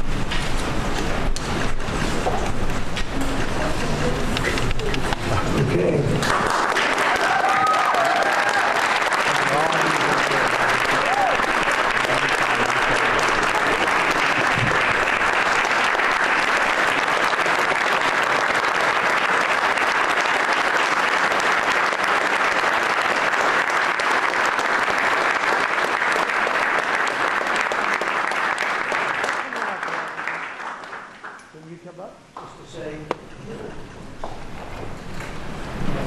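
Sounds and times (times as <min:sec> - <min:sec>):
crowd applause: 0:03.3 - 0:31.5.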